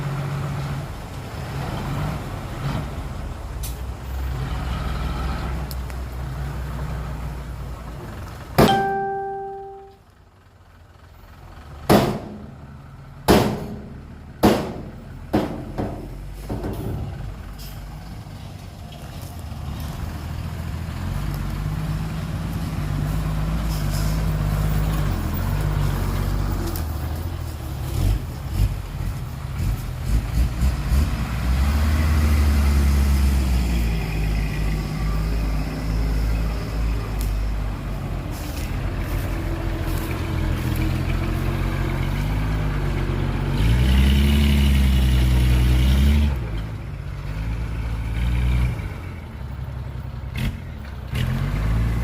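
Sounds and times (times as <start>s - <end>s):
diesel truck engine running: 0.0s - 52.0s
loud metal clang: 8.6s - 9.7s
sharp bangs: 11.9s - 12.5s, 13.3s - 16.2s.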